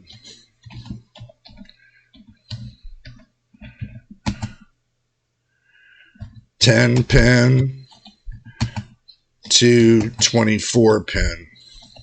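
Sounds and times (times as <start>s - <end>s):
computer keyboard typing: 0.1s - 4.7s, 6.2s - 10.4s, 11.7s - 12.0s.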